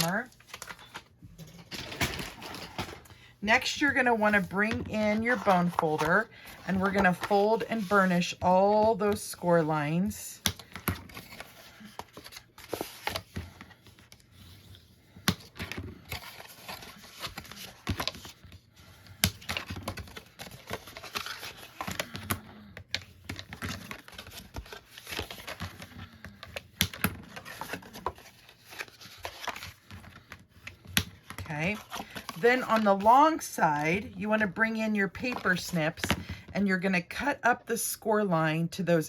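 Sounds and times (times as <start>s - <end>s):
paper crinkling: 15.4s - 18.6s, 19.4s - 33.9s.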